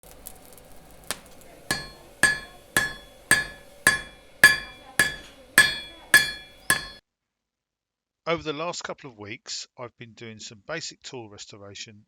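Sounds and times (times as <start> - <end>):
metal being struck: 1.1 - 7.0.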